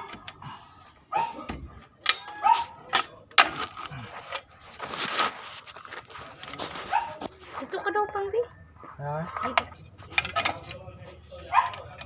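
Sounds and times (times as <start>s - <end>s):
dog barking: 1.1s - 1.5s, 2.3s - 2.8s, 6.9s - 7.2s, 11.5s - 11.9s.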